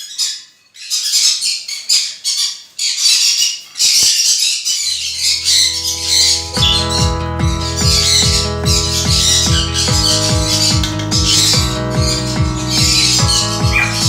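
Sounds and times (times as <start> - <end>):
parrots squawking: 0.0 - 14.0
background music: 4.9 - 14.0.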